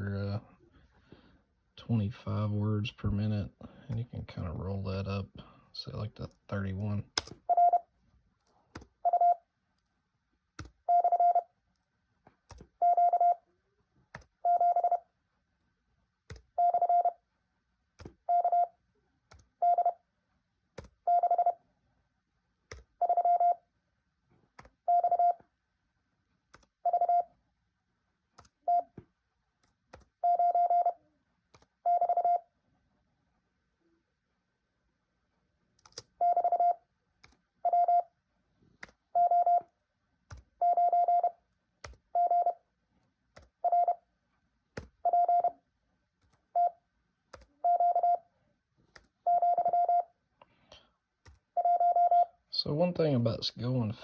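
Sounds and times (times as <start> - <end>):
morse code beeps: 7.5 - 7.8, 9.0 - 9.4, 10.9 - 11.5, 12.8 - 13.4, 14.4 - 15.0, 16.6 - 17.2, 18.3 - 18.7, 19.6 - 20.0, 21.1 - 21.6, 23.0 - 23.6, 24.9 - 25.4, 26.8 - 27.3, 28.7 - 28.9, 30.2 - 31.0, 31.8 - 32.4, 36.2 - 36.8, 37.6 - 38.1, 39.2 - 39.6, 40.6 - 41.4, 42.2 - 42.6, 43.6 - 44.0, 45.0 - 45.6, 46.6 - 46.8, 47.6 - 48.2, 49.3 - 50.1, 51.6 - 52.4.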